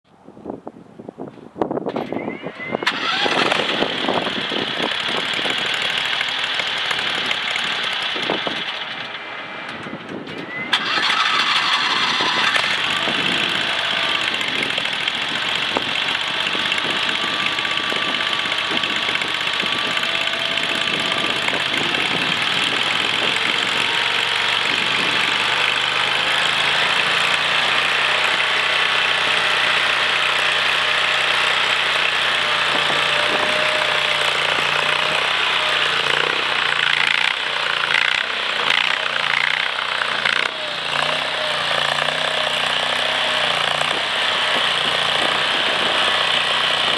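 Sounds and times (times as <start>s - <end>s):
skid steer engine running: 1.9s - 46.9s.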